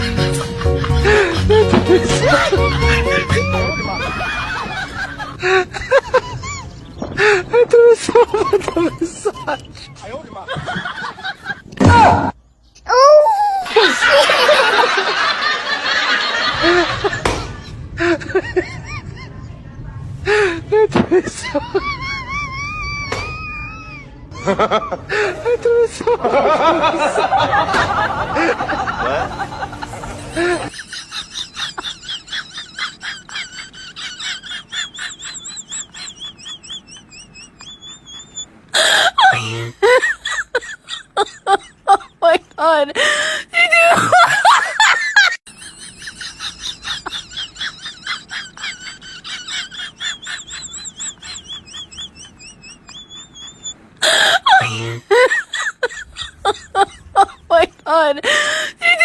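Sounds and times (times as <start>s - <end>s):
person snickering and laughing: 0.0s - 12.1s, 20.3s - 43.1s, 43.7s - 59.0s
high squealing giggles: 1.0s - 11.6s, 21.2s - 26.2s, 30.3s - 43.1s, 43.7s - 59.0s.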